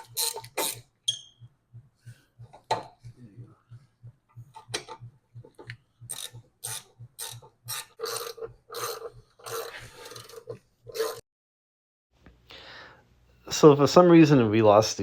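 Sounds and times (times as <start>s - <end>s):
ratchet wrench clicking: 6.1s - 10.4s.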